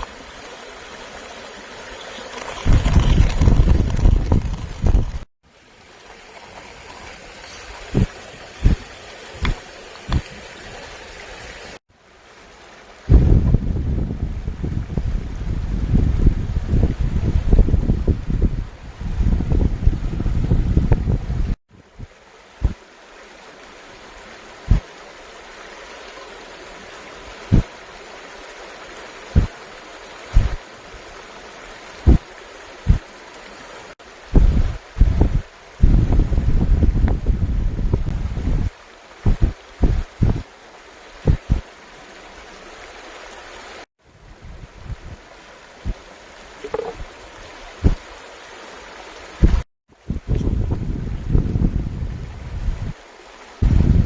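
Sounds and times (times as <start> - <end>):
stream rushing: 0.0 - 54.0
dull low thumps: 30.4 - 30.6, 34.4 - 40.4, 41.3 - 41.6, 49.4 - 51.9, 53.6 - 54.0.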